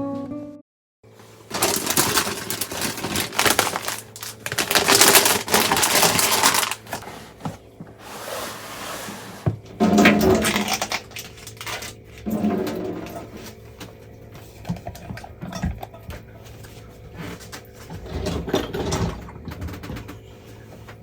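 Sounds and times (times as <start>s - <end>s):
small hard objects clattering: 1.3s - 7.5s.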